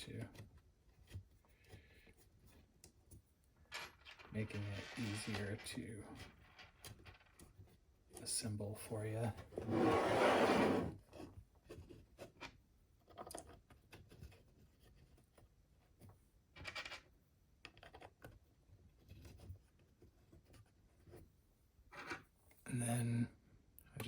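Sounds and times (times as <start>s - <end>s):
wood scraping: 9.5s - 11.2s.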